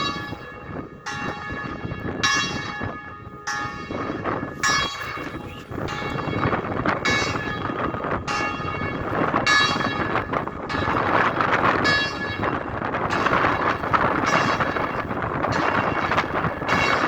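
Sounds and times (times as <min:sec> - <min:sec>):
church bells ringing: 0:00.0 - 0:17.0
wind noise on microphone: 0:00.0 - 0:17.0.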